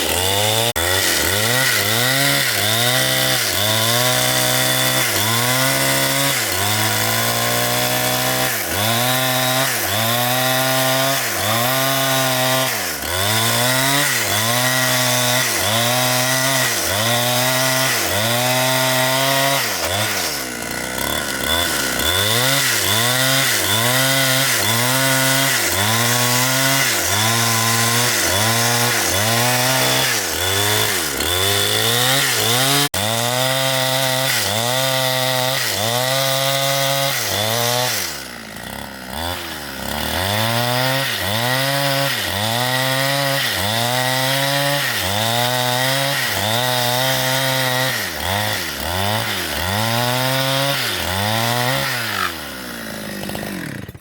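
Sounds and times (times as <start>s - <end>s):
chainsaw cutting tree trunk: 0.0s - 54.0s.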